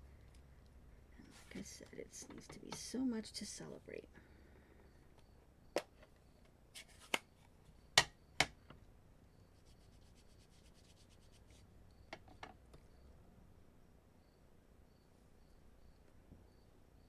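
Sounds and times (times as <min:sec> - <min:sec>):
sharp taps and clicks on tabletop: 0:08.0 - 0:08.8.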